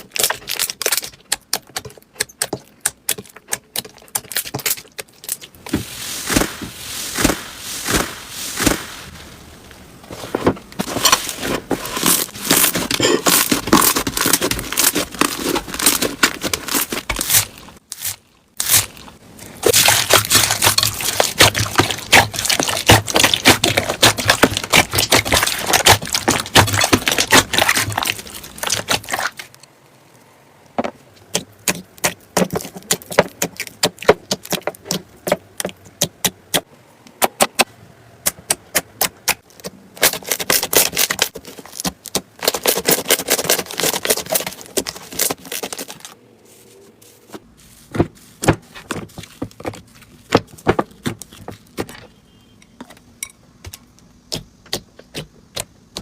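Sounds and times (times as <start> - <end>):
slime squelching and popping: 0.0 - 9.0, 11.9 - 29.6, 31.2 - 36.6, 38.2 - 46.1.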